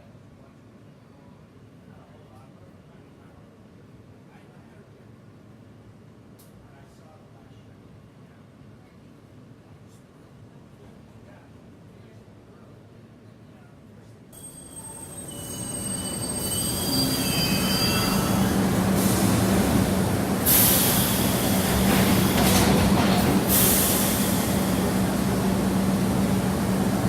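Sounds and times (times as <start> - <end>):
subway train rumbling: 7.4 - 27.0
wheel squeals: 14.4 - 19.4
hiss bursts: 18.4 - 26.7.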